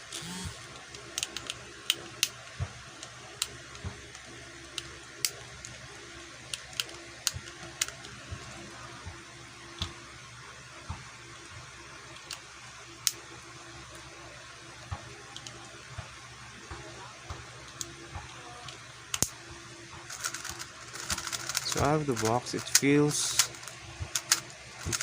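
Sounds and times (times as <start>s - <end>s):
speed cube clicking: 0.1s - 2.4s, 6.5s - 8.5s, 18.7s - 19.3s, 20.0s - 25.0s.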